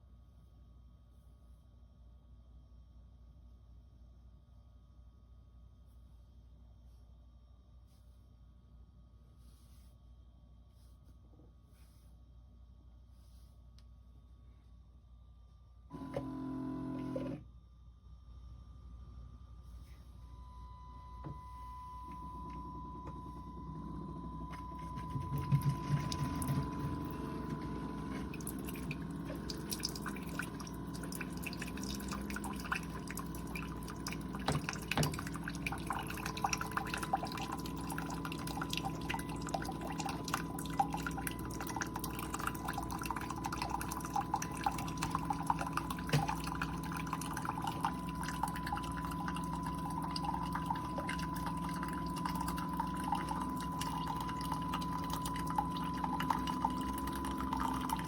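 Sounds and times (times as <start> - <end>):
coffee maker humming: 15.9 - 17.4, 21.2 - 58.0
thin steady tone: 20.2 - 58.0
coffee dripping into cup: 24.5 - 58.0.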